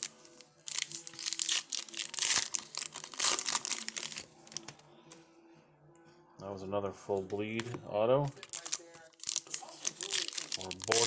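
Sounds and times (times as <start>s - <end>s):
foil wrapper tearing and crinkling: 0.0s - 4.8s, 8.3s - 11.0s.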